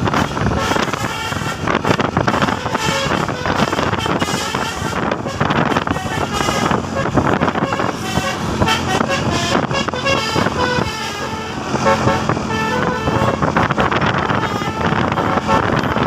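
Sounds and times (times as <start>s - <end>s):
multi-tone bus air horn tune: 0.0s - 16.0s
steady low rumble: 0.0s - 16.0s.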